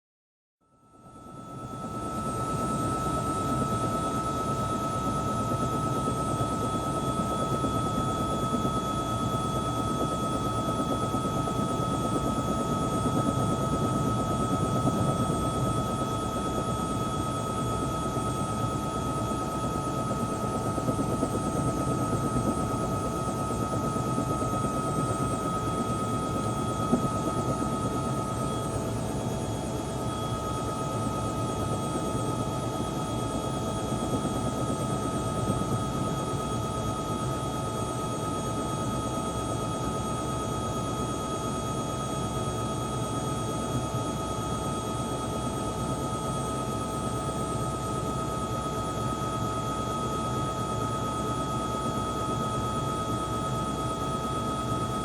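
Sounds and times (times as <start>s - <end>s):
helicopter running: 1.7s - 41.4s.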